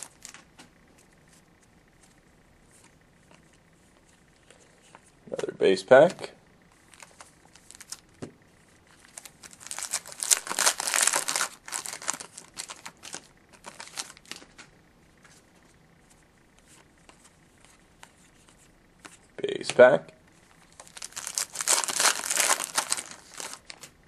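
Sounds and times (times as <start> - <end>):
wrapper tearing and crinkling: 0.0 - 0.4, 6.9 - 8.0, 9.0 - 14.4, 20.7 - 23.9.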